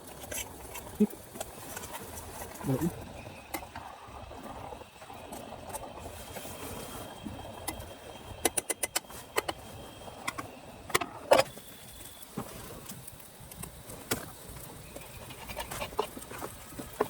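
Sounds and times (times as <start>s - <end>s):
hard objects clicking and knocking: 8.4s - 9.6s.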